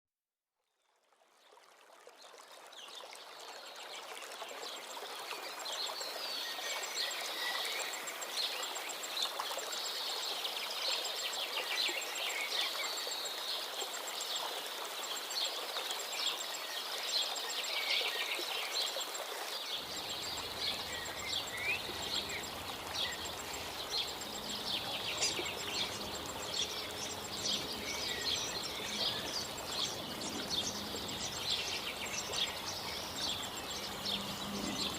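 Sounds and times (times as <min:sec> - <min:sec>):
steady background hiss: 0:05.4 - 0:34.9
small birds chirping: 0:19.7 - 0:34.9.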